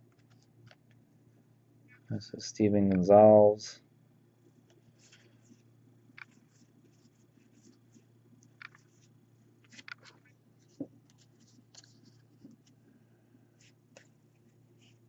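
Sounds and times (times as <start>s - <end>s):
low steady hum: 0.0s - 15.0s
trading cards sliding and clicking: 4.7s - 12.8s.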